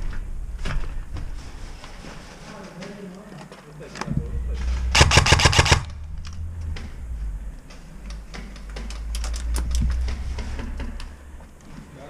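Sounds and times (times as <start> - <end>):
airsoft guns firing: 4.9 - 6.0.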